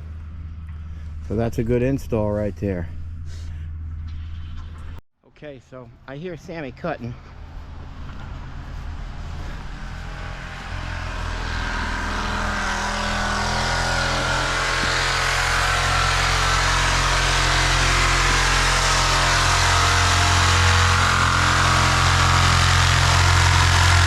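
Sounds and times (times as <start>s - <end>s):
reciprocating saw cutting steel: 7.3s - 24.0s.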